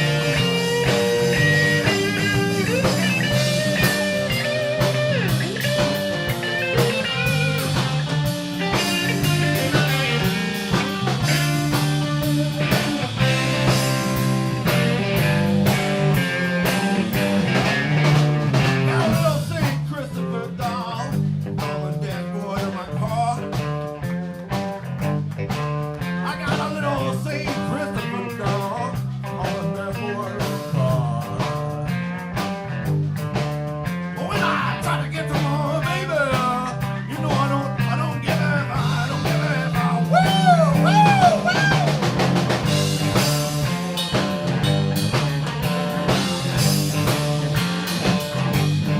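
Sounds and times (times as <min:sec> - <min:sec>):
electric guitar lead: 0:00.0 - 0:21.8, 0:23.4 - 0:48.9
blues band playing: 0:00.0 - 0:48.9.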